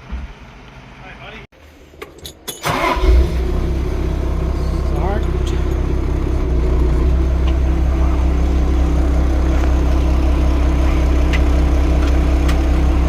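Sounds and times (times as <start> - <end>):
diesel engine idling: 2.6 - 13.0.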